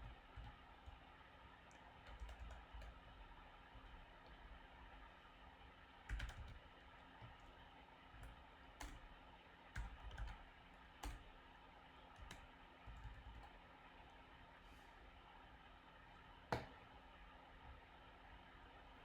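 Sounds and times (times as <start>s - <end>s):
computer keyboard keystrokes: 0.0s - 1.0s, 1.7s - 3.1s, 6.1s - 7.5s, 8.2s - 9.1s, 9.8s - 11.3s, 12.1s - 13.6s
faint steady background noise: 0.0s - 19.0s.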